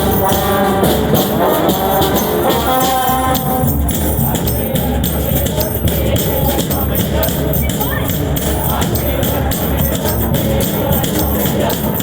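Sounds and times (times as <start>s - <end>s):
brass horns holding notes: 0.0s - 12.0s
drums and percussion: 0.0s - 12.0s.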